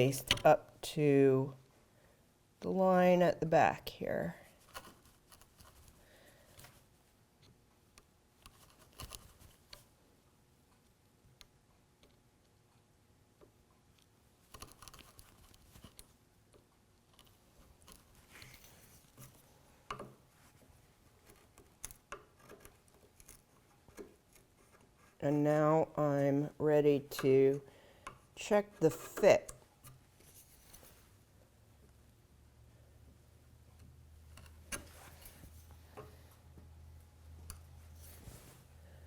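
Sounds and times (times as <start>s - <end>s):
chisel scraping wood: 22.2s - 25.2s.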